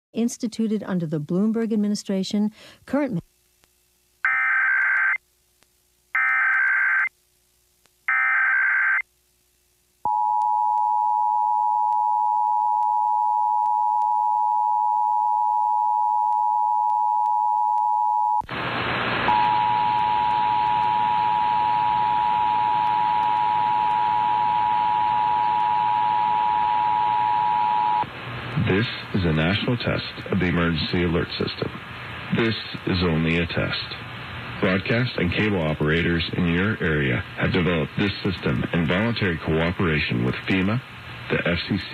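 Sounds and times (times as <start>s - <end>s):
radio static hiss: 18.4s - 41.9s.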